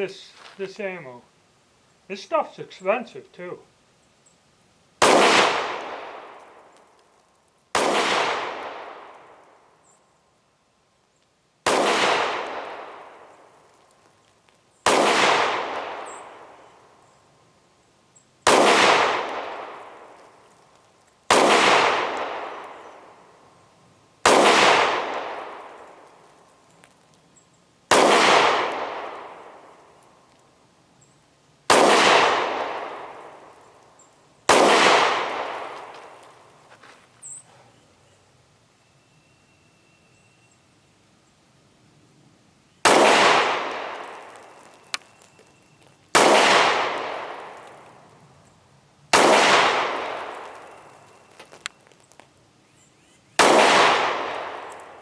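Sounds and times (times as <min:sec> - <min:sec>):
pistol shots with echo: 0:05.0 - 0:06.6, 0:07.8 - 0:09.3, 0:11.6 - 0:13.3, 0:14.8 - 0:16.7, 0:18.5 - 0:20.2, 0:21.3 - 0:23.2, 0:24.2 - 0:26.0, 0:27.9 - 0:29.8, 0:31.7 - 0:33.5, 0:34.5 - 0:36.2, 0:42.8 - 0:45.1, 0:46.2 - 0:47.8, 0:49.1 - 0:51.0, 0:53.4 - 0:55.0.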